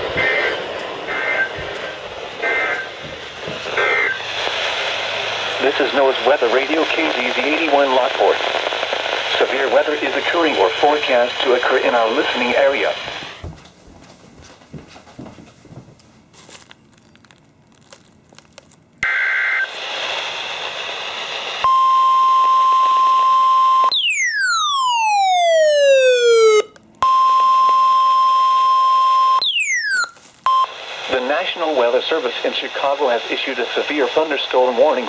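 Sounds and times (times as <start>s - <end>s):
data tones burst: 0.0s - 3.0s, 3.8s - 4.3s
steady warning alarm tone: 0.0s - 4.2s, 21.6s - 30.7s.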